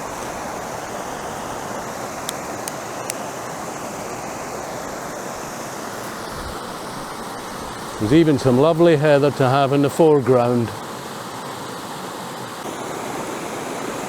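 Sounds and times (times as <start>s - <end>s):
water rushing over waterfall: 0.0s - 14.0s.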